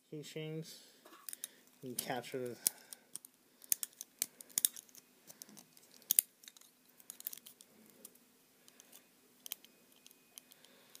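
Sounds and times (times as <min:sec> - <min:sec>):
small plastic parts clicking: 0:01.2 - 0:11.0.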